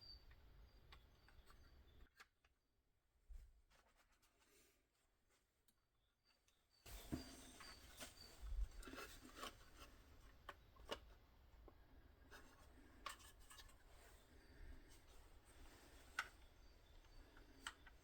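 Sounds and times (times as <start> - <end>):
light handling clicks and rubbing: 6.9 - 18.0.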